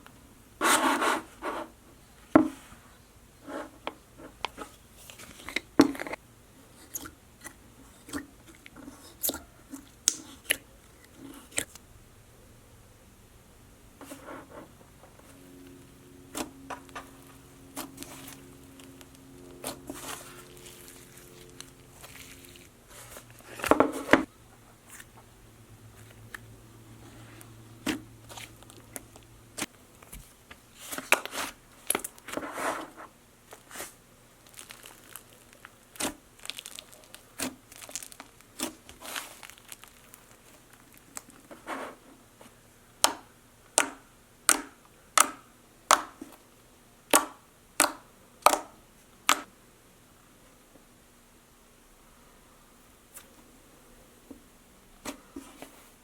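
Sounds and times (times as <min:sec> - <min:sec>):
slime crinkling and crackling: 0:17.8 - 0:23.6, 0:33.5 - 0:41.6.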